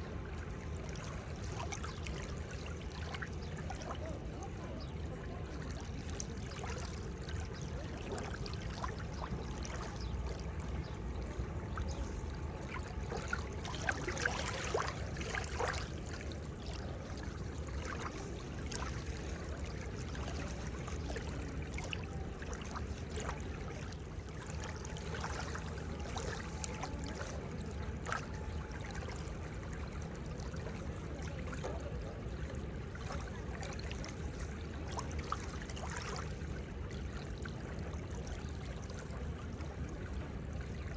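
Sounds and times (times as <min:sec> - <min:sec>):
seawater washing at shoreline: 0:00.0 - 0:40.9.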